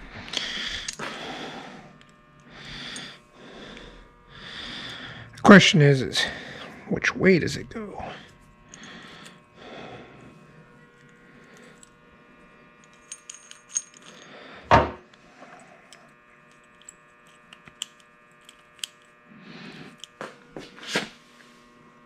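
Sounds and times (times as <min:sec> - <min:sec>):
faint steady hum: 0:00.0 - 0:22.0
metal clicks and clinks of lock: 0:12.8 - 0:14.3.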